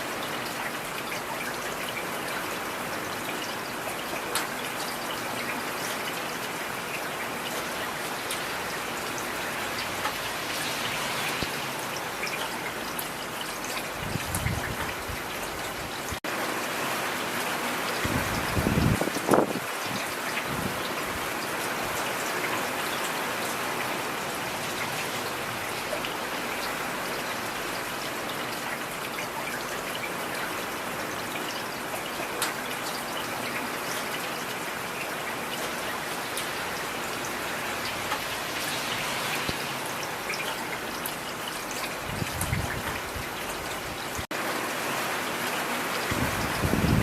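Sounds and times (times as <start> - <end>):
heavy rain falling: 0.0 - 47.0.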